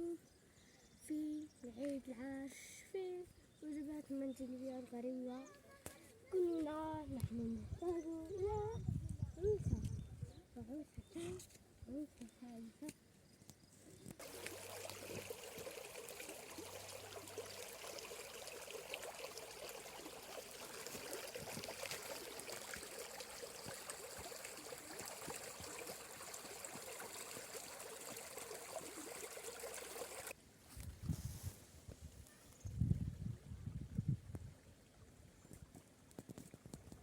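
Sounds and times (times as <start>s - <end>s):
stream water running: 14.1s - 30.4s.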